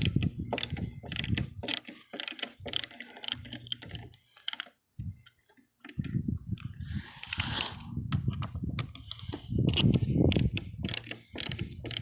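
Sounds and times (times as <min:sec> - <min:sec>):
ratchet wrench clicking: 0:00.0 - 0:04.7, 0:08.8 - 0:12.0.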